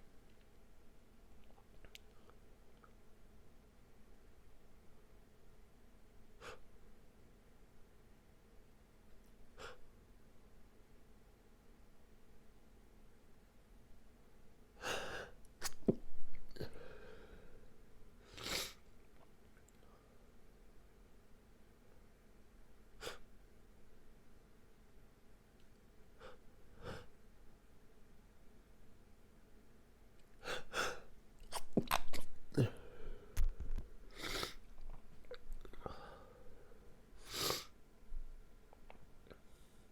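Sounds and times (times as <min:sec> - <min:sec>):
person breathing quickly: 0:16.6 - 0:17.7, 0:32.6 - 0:34.6.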